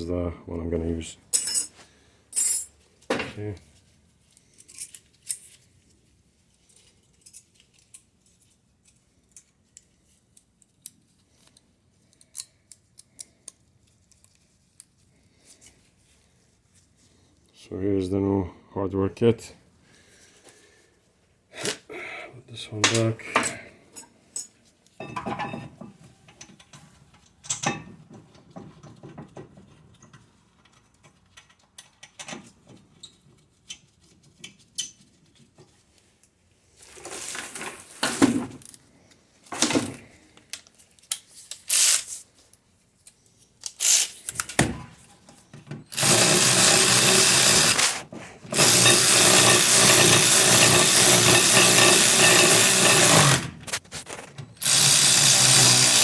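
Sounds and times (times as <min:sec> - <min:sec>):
power tool running: 0:45.9 - 0:53.7, 0:54.6 - 0:56.0.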